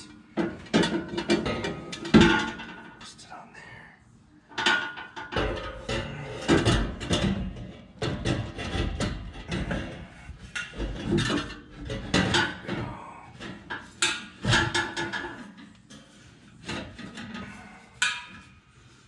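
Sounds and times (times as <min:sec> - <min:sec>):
metal exhaust pipe clanking: 0:00.0 - 0:03.0, 0:04.5 - 0:18.6.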